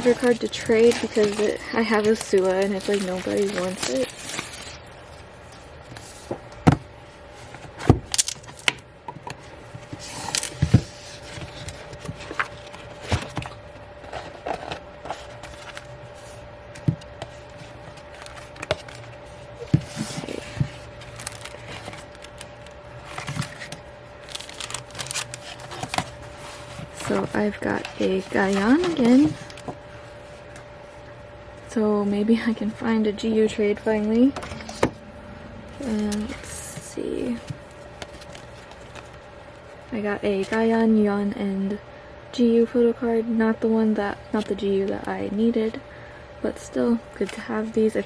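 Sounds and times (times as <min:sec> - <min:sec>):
paper and plastic rustling: 0:00.0 - 0:06.7, 0:09.3 - 0:31.1, 0:35.6 - 0:40.7, 0:47.0 - 0:48.0
faint steady hum: 0:00.0 - 0:48.0.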